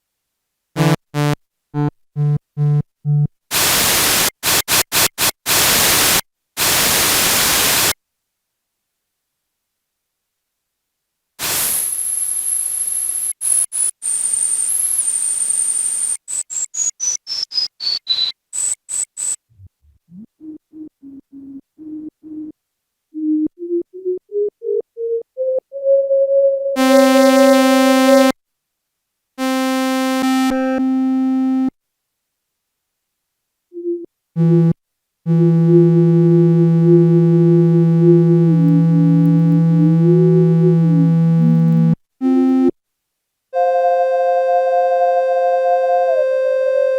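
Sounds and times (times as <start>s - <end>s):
held synthesizer notes: 0.8s - 3.3s, 19.5s - 22.6s, 33.8s - 42.7s
steady high synthesizer tone: 19.5s - 22.5s, 23.2s - 28.3s, 33.8s - 42.7s
short low synthesizer notes: 33.8s - 42.0s
short synthesizer blips: 33.8s - 42.0s.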